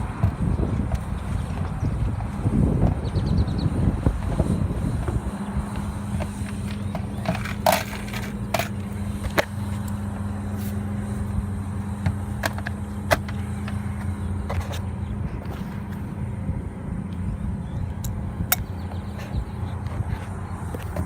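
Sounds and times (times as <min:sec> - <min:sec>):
refrigeration unit humming: 0:00.0 - 0:21.0.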